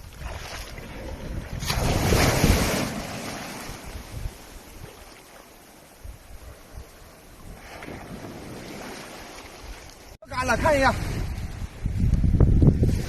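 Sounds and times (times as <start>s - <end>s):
wind buffeting microphone: 0.0s - 5.1s, 9.6s - 13.0s
wave surging on beach: 1.7s - 11.8s.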